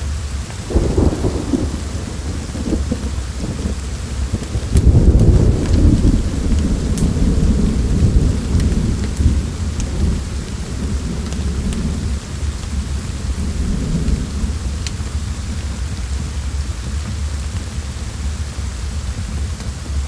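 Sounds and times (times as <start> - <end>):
steady rain: 0.0 - 20.0
wood fire crackles: 0.0 - 20.0
rolling thunder: 0.4 - 16.2.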